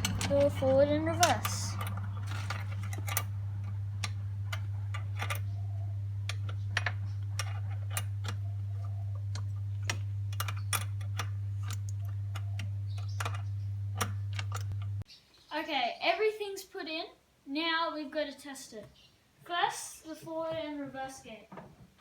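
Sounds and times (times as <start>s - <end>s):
hand tools clicking on metal: 0.0s - 15.0s
low hum: 0.0s - 15.1s.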